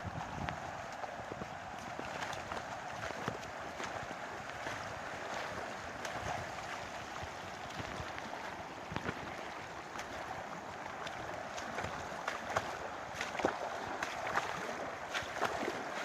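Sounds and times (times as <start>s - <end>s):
water rushing: 0.0s - 16.0s.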